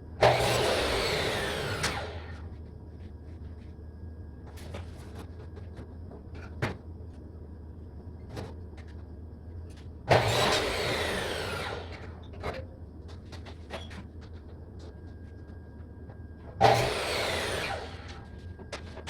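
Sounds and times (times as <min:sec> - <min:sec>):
electric power saw winding down: 0:00.2 - 0:02.4, 0:10.1 - 0:12.2, 0:16.6 - 0:18.2
steady low hum: 0:02.2 - 0:10.1, 0:11.9 - 0:16.6.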